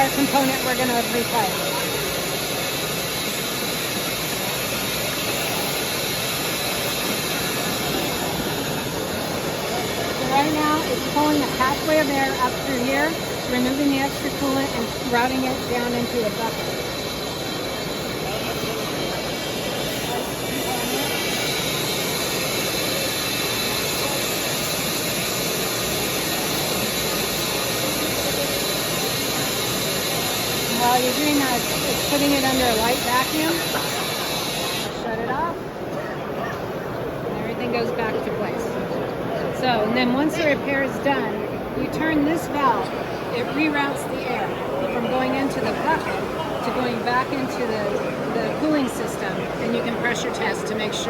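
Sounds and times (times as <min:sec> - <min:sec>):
air tool hissing: 0:00.0 - 0:35.0.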